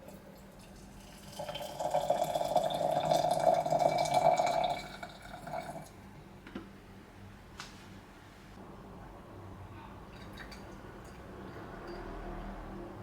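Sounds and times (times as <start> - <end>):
water running from a tap: 0.0 - 5.9.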